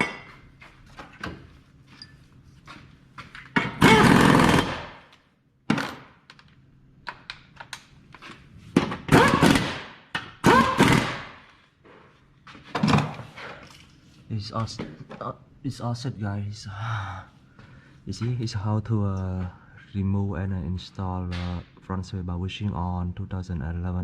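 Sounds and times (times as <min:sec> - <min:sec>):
pneumatic impact wrench bursts: 0:03.7 - 0:05.1, 0:09.1 - 0:11.5.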